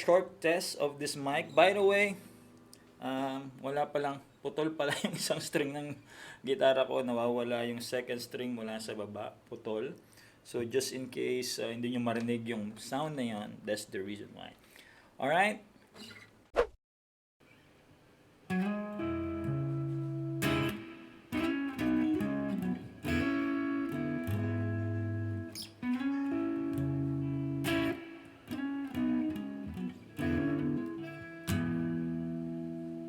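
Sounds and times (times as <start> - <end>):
guitar chords and picked notes: 18.5 - 33.0.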